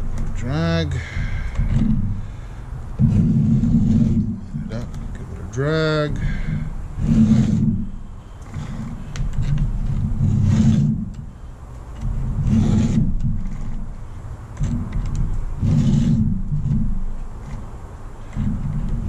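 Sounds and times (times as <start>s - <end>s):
file scraping chain teeth: 6.1s - 7.8s, 12.0s - 13.8s.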